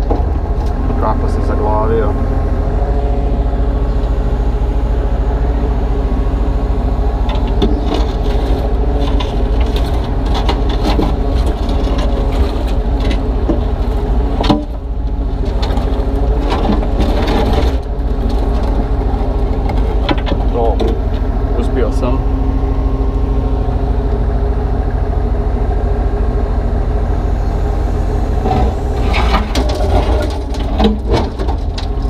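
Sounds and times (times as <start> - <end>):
excavator diesel engine running: 0.0 - 32.0
concrete scraping against bucket: 28.5 - 32.0.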